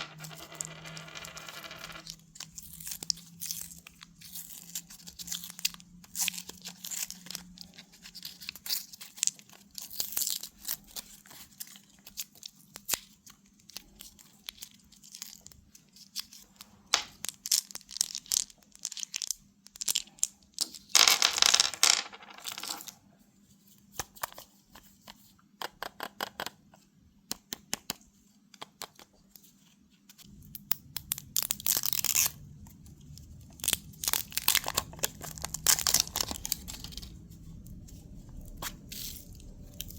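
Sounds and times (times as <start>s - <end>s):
plastic packaging crackling: 31.0s - 39.9s
plastic packaging tearing: 31.1s - 32.5s, 33.5s - 37.2s.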